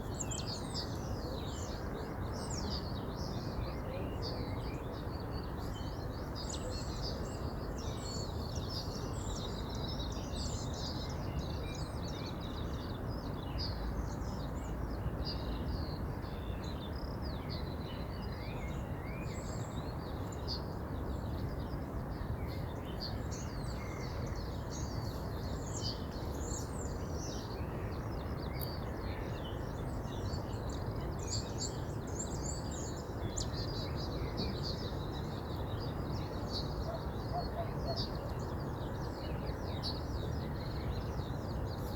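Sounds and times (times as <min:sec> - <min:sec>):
small birds chirping: 0:22.5 - 0:41.9.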